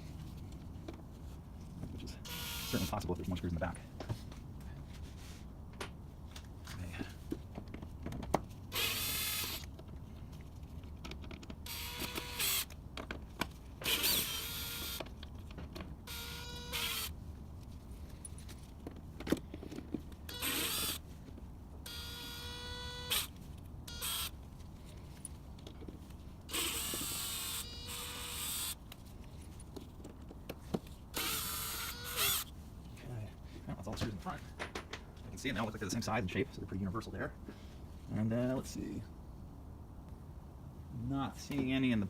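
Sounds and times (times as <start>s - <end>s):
cordless drill whining: 2.3s - 3.0s, 8.7s - 9.7s, 11.7s - 12.8s, 13.8s - 15.0s, 16.1s - 17.1s, 20.3s - 21.0s, 21.9s - 23.3s, 23.9s - 24.3s, 26.5s - 28.8s, 31.2s - 32.5s
drill clicks: 11.7s - 12.8s, 13.8s - 15.2s, 20.3s - 21.0s, 26.5s - 28.8s, 31.2s - 32.5s.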